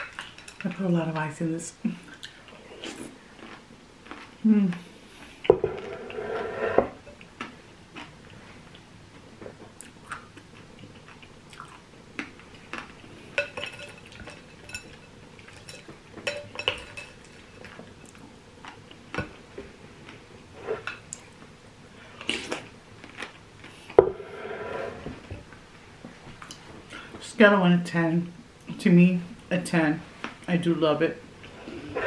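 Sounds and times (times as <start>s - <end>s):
spoon clinking in a bowl: 13.4s - 17.2s.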